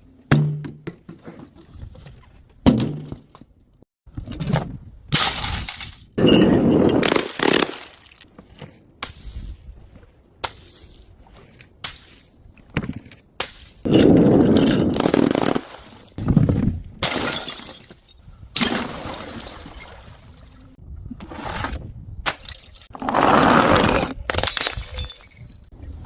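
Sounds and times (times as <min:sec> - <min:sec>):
glass shattering: 0:06.5 - 0:08.3, 0:17.0 - 0:18.9, 0:24.3 - 0:25.6.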